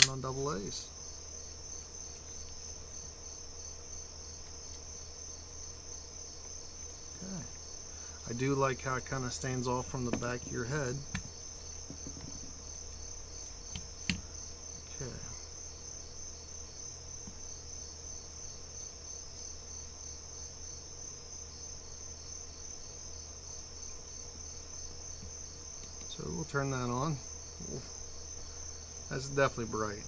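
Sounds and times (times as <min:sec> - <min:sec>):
crickets chirping: 0:00.0 - 0:30.0.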